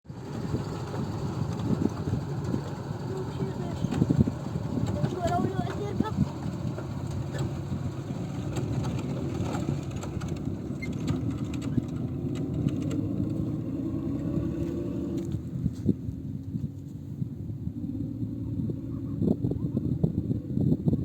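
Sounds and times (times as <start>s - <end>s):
motor droning: 0.1s - 16.6s.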